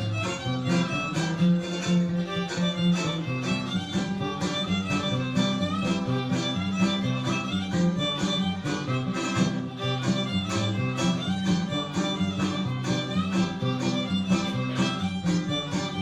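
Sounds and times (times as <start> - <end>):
bass guitar notes: 0.0 - 16.0
strummed guitars: 0.0 - 16.0
violin melody: 0.0 - 16.0.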